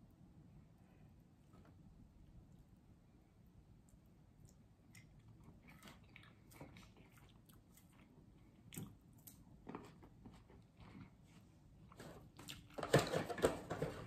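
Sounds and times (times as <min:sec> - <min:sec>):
person chewing food: 0:03.7 - 0:13.0.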